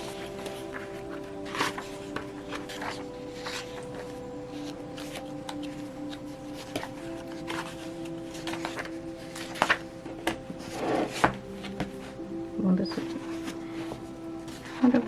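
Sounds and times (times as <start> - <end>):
paper pages turning: 0.0 - 12.0
soft background music: 0.0 - 15.0.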